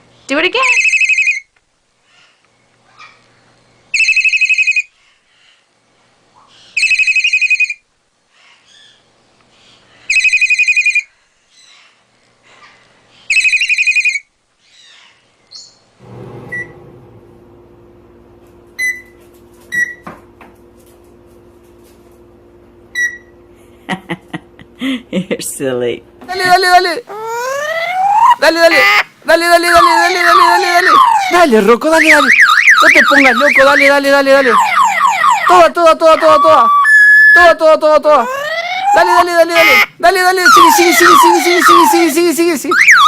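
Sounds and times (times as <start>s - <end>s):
bird mimicking phone ringtone: 0.6s - 1.5s, 3.9s - 4.9s, 6.8s - 7.8s, 10.1s - 11.1s, 13.3s - 14.3s, 27.1s - 29.0s, 29.7s - 35.6s, 36.2s - 37.4s, 38.2s - 43.0s
faint bird chirps: 27.1s - 28.4s, 36.4s - 37.4s.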